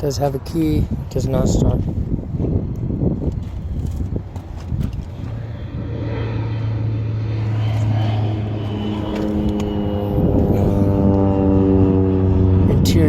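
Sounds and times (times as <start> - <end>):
motor engine humming: 1.9 - 13.0
higher droning tone: 5.0 - 13.0.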